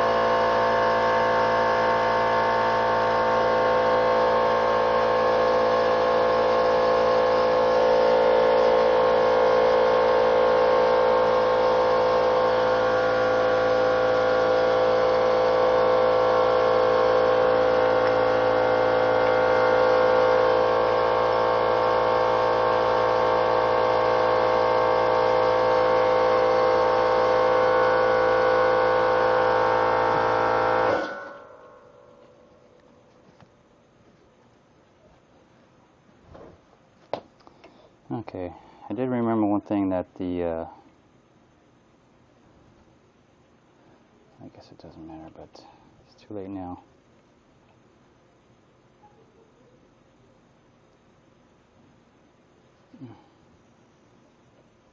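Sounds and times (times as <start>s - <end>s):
motor humming: 0.0s - 33.5s, 52.9s - 53.3s.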